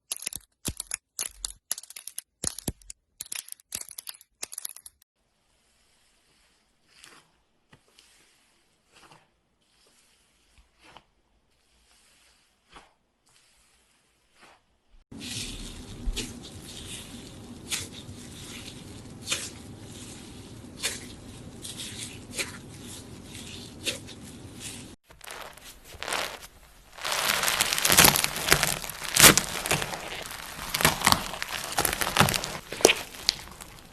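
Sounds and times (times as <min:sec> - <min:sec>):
dense crackling and crinkling: 0:15.0 - 0:33.9
slime squished by hand: 0:15.2 - 0:33.9
slime popping: 0:25.1 - 0:33.9.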